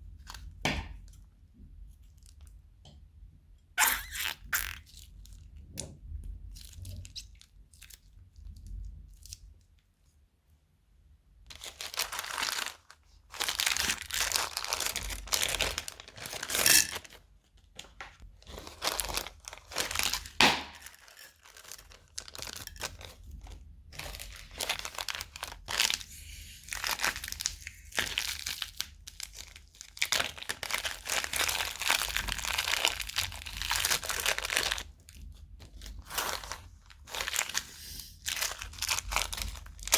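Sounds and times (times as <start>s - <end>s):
crunchy slime crackling: 11.5s - 17.1s, 18.4s - 39.9s.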